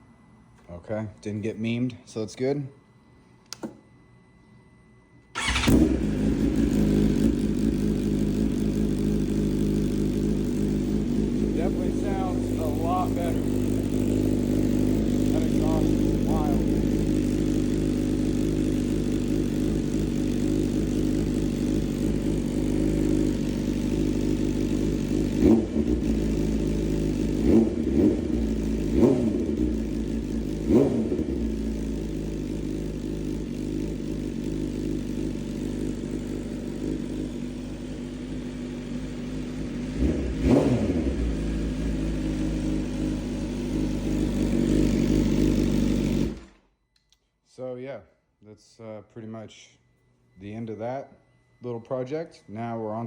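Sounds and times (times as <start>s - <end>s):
motorcycle engine idling: 5.4s - 46.7s
motorcycle engine revving: 5.4s - 46.7s.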